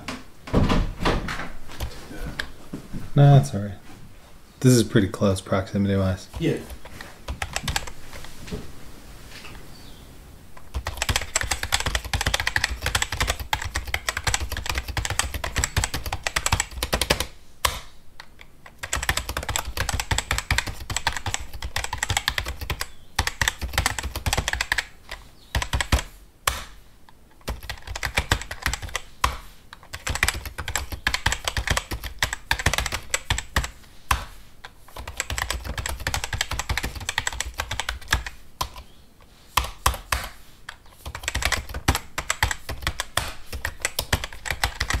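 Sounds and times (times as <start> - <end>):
fast typing on computer keyboard: 6.3 - 8.0, 10.6 - 17.8, 18.6 - 26.7, 27.4 - 34.2, 34.8 - 38.9, 39.6 - 45.0.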